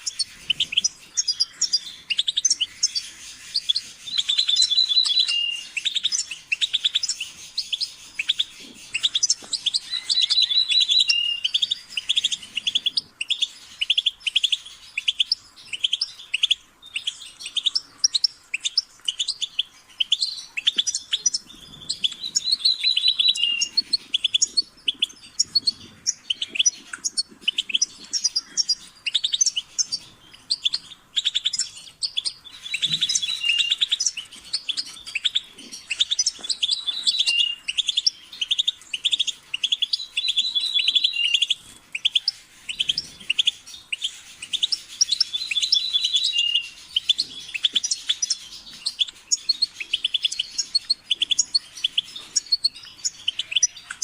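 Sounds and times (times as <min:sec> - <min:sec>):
finch twittering song: 0:00.0 - 0:54.0.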